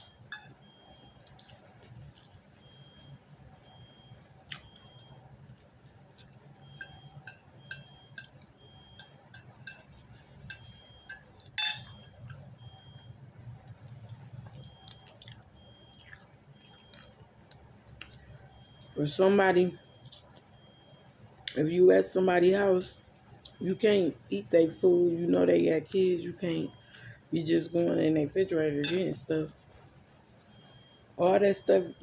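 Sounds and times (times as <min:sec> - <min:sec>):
person chewing with mouth clicks: 0:01.2 - 0:02.5, 0:04.4 - 0:07.1, 0:12.1 - 0:19.0, 0:20.0 - 0:20.5.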